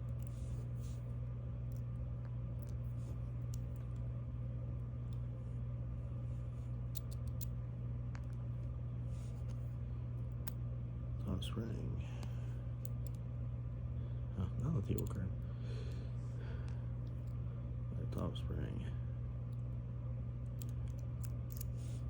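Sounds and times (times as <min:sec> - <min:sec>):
steady low hum: 0:00.0 - 0:22.0
faint clicks of lock parts: 0:06.9 - 0:07.5, 0:12.2 - 0:13.2, 0:20.4 - 0:21.9.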